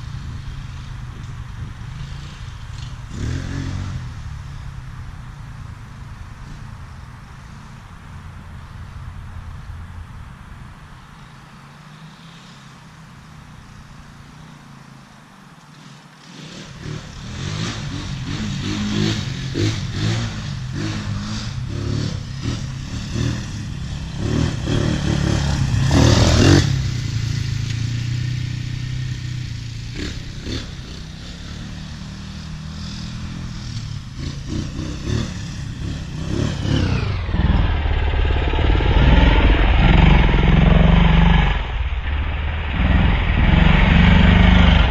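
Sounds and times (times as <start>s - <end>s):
atv engine revving: 0.0s - 7.6s, 15.7s - 44.9s.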